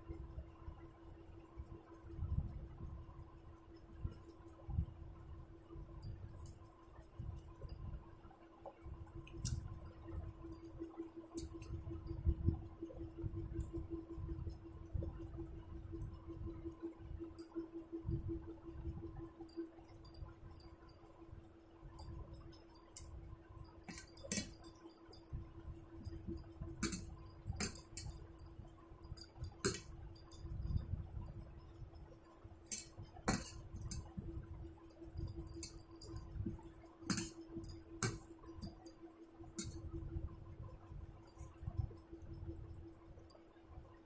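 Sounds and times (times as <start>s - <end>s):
light glassy clinks: 23.8s - 25.3s, 26.0s - 28.5s, 29.1s - 30.8s, 32.2s - 34.1s, 35.0s - 36.4s, 37.1s - 39.0s.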